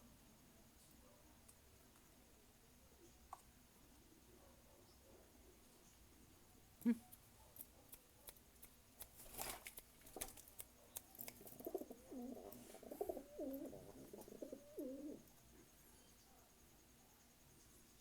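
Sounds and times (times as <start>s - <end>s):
pigeon cooing: 11.2s - 15.3s.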